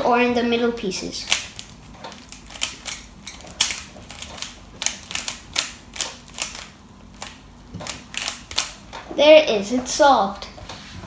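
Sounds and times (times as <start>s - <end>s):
puzzle cube twisting clicks: 1.2s - 8.9s.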